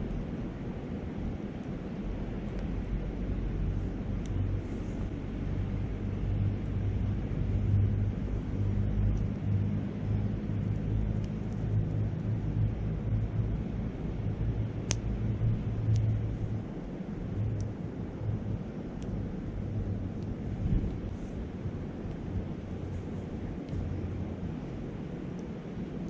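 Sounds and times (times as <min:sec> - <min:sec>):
wind noise on microphone: 0:00.0 - 0:26.0
campfire crackling pops: 0:03.7 - 0:05.1, 0:14.4 - 0:16.7, 0:18.8 - 0:24.5.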